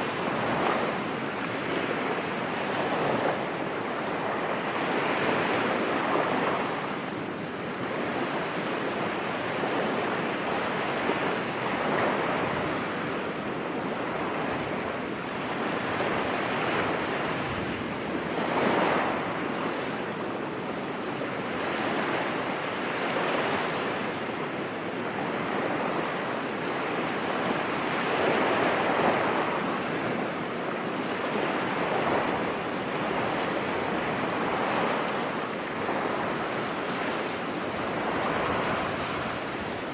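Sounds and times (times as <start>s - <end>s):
sea waves breaking on beach: 0.0s - 39.9s
wind buffeting microphone: 31.6s - 39.9s.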